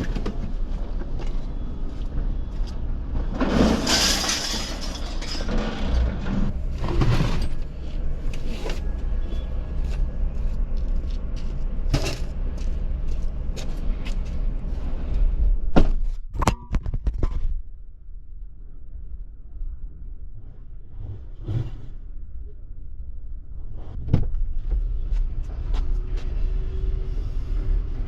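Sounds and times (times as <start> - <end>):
metal scrap crashing onto pile: 3.4 - 6.4
low rumble: 17.0 - 28.0.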